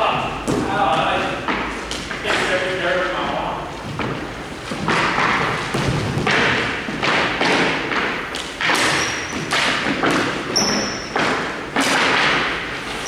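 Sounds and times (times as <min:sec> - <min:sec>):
skate squeaks: 0:08.7 - 0:12.1.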